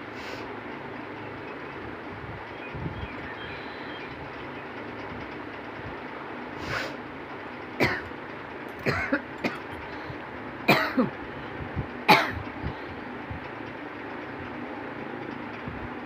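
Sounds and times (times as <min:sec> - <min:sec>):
person coughing hard: 0:07.8 - 0:08.1, 0:08.8 - 0:09.8, 0:10.7 - 0:11.1, 0:12.1 - 0:12.4.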